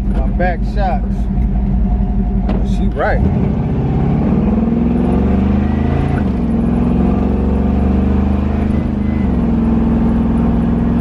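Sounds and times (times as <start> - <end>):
car engine running: 0.0 - 11.0.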